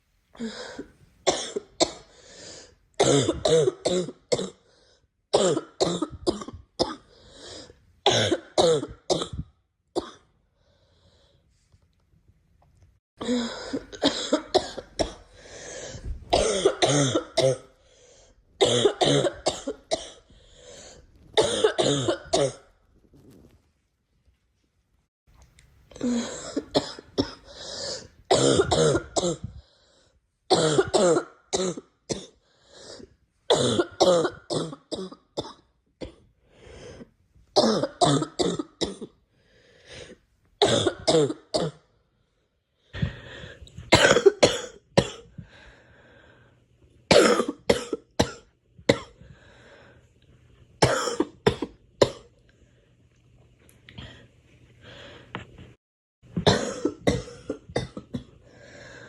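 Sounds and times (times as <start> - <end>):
girl coughing: 1.3 - 2.1, 3.0 - 4.6, 5.3 - 7.0, 8.1 - 9.4, 13.2 - 15.2, 16.3 - 17.7, 18.6 - 20.2, 21.4 - 22.6, 26.0 - 27.5, 28.3 - 29.5, 30.5 - 32.4, 33.5 - 36.2, 37.6 - 39.1, 40.6 - 41.8, 43.9 - 45.3, 47.1 - 49.1, 50.8 - 52.2, 56.4 - 58.3.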